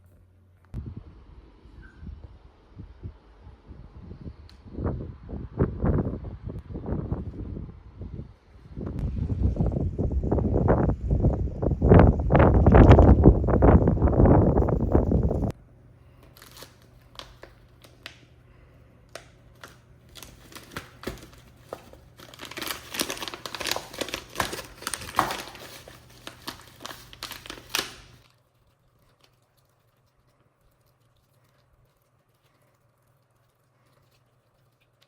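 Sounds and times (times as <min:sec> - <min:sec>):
crinkling and rustling: 0:12.6 - 0:35.0.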